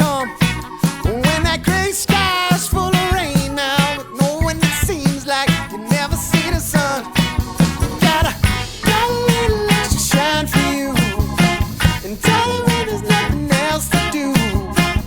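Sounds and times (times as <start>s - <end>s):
background music with quick beat: 0.0s - 15.0s.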